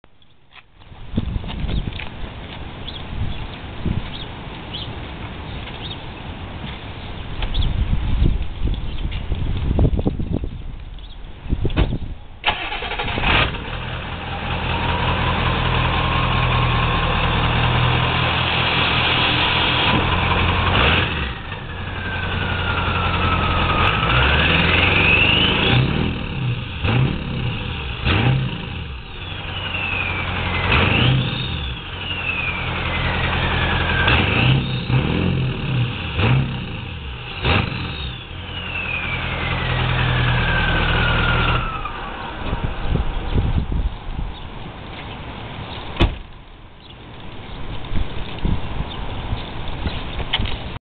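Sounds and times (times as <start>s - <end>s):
diesel engine revving: 12.4s - 43.4s
turbo whistling: 21.7s - 26.3s, 29.0s - 35.0s, 37.2s - 42.1s.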